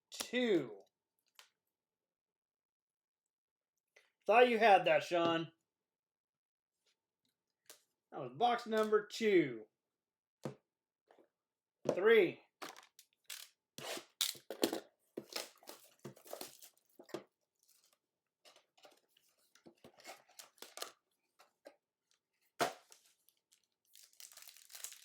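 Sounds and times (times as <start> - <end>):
card packaging tearing and crinkling: 13.3 - 16.8, 22.6 - 25.0.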